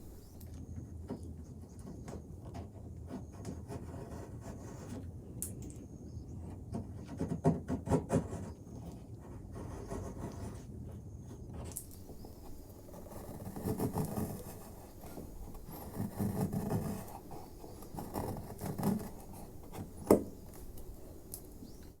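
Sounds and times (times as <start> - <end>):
chisel scraping wood: 0.0 - 0.4, 11.8 - 22.0.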